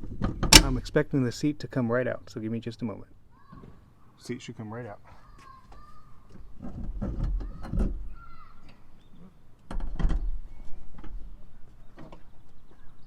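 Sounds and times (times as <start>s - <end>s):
seat frame thumping and rattling: 0.0s - 0.9s.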